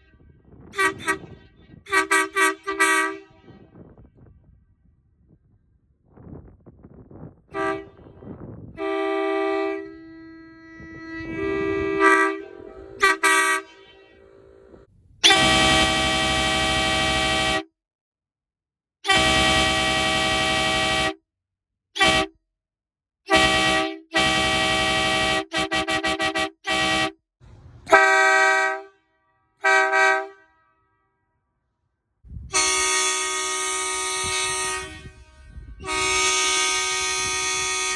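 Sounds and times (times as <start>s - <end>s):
truck horn blasts: 0.1s - 3.9s, 7.5s - 17.7s, 19.1s - 21.2s, 22.0s - 22.3s, 23.3s - 27.2s, 27.9s - 31.0s, 32.4s - 37.9s.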